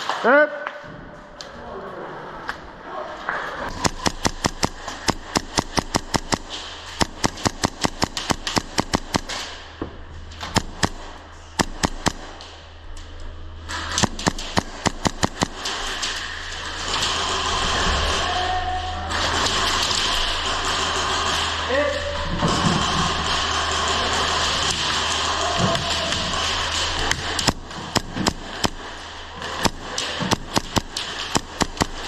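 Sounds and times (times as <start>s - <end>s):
airsoft guns firing: 3.7s - 9.6s, 10.4s - 12.6s, 13.8s - 17.7s, 22.6s - 32.0s
steady noise: 3.7s - 32.0s.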